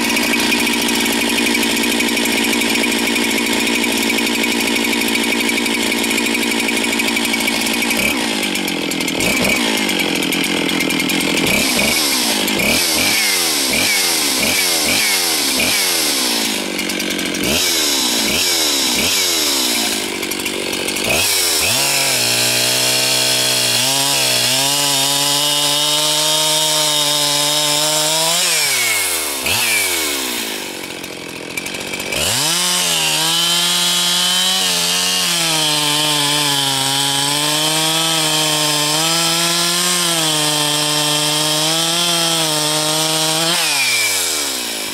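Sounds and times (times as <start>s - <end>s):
chainsaw revving: 0.0s - 44.9s.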